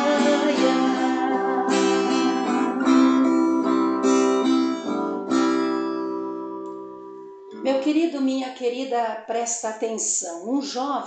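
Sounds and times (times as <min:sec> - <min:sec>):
acoustic guitar strumming chords: 0:00.0 - 0:07.6.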